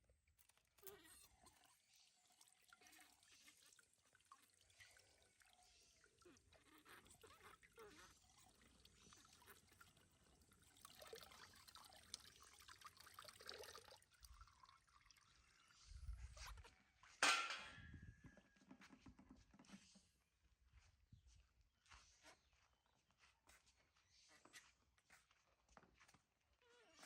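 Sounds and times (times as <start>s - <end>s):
bath water trickling and splashing: 0.1s - 17.1s.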